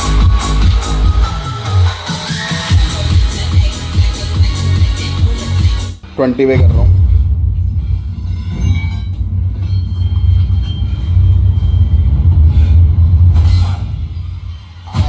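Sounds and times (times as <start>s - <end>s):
bass-heavy music: 0.0s - 8.2s, 14.8s - 15.0s.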